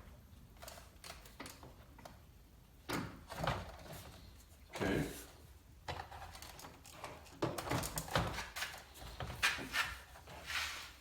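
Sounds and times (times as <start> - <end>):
plastic parts knocking and clicking: 5.8 - 9.6.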